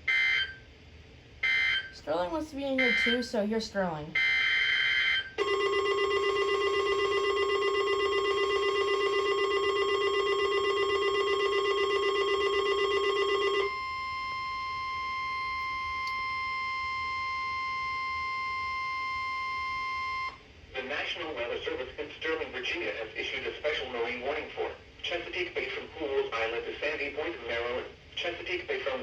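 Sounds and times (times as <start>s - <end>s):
steady pure attention tone: 1.4s - 20.4s
buzzing alarm tone pulsing: 2.8s - 3.3s, 4.2s - 20.4s.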